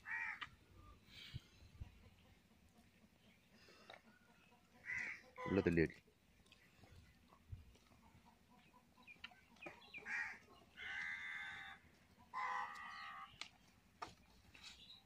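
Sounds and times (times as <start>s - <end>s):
farm animal calling: 1.9s - 6.0s, 7.3s - 13.5s.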